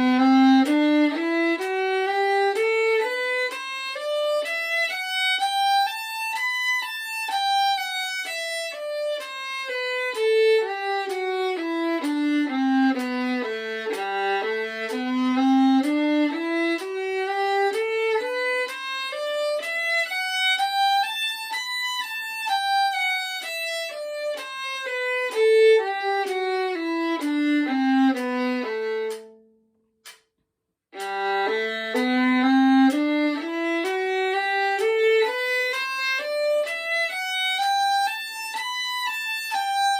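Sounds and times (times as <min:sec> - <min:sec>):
solo violin playing a scale: 0:00.0 - 0:29.4, 0:31.0 - 0:39.9.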